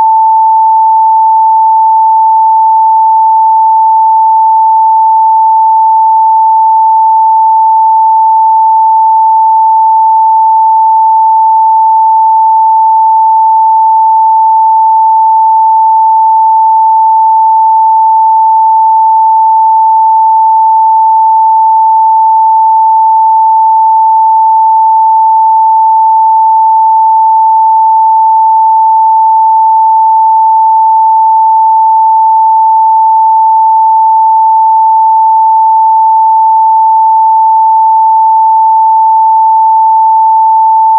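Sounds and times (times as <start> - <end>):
sine-wave test tone: 0.0 - 40.9.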